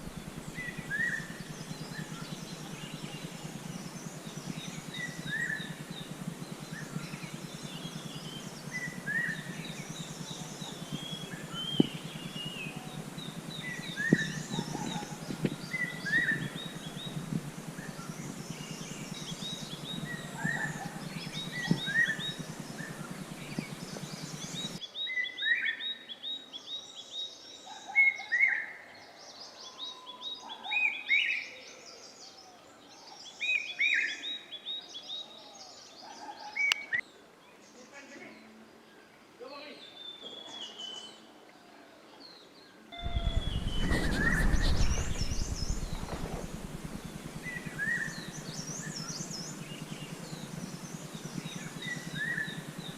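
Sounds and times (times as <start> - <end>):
low hum and hiss: 0.0 - 24.8, 43.0 - 52.9
small birds chirping: 0.0 - 24.8, 43.0 - 52.9
thin bird trill: 43.0 - 52.9.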